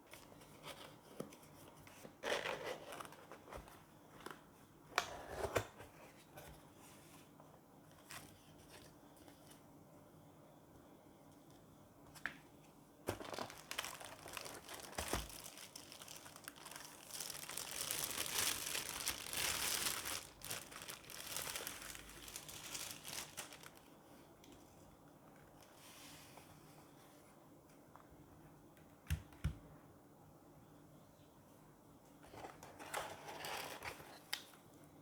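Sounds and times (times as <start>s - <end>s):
crinkly packaging rustling: 13.0s - 24.7s, 32.3s - 34.4s.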